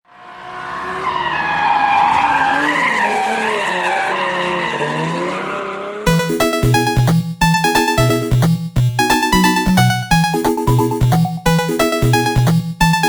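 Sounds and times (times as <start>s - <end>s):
bouncy electronic tune: 6.1s - 13.0s.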